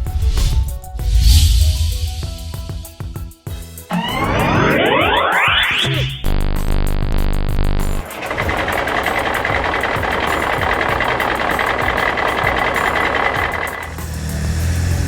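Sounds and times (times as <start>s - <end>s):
music: 0.0s - 15.0s
high whine: 3.9s - 11.8s
heavy vehicle engine running: 3.9s - 15.0s.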